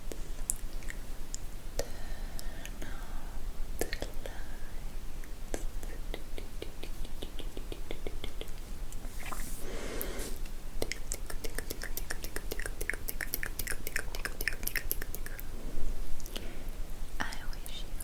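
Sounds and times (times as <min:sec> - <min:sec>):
breathy sound: 0:09.6 - 0:10.4
wet mouth clicks and smacks: 0:10.8 - 0:15.5.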